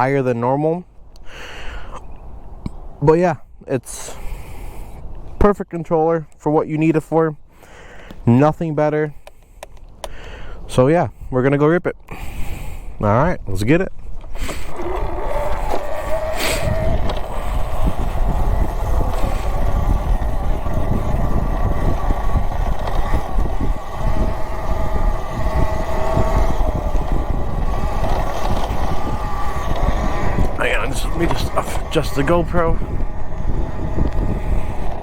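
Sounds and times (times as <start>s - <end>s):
electric motor whine: 14.2s - 35.0s.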